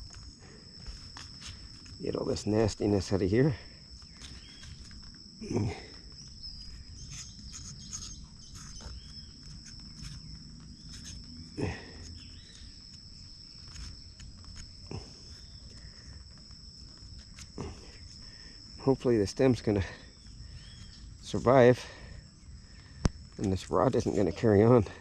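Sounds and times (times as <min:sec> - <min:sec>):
insects chirring: 0:00.0 - 0:25.0
knocks and scrapes on plant stem: 0:07.1 - 0:10.2.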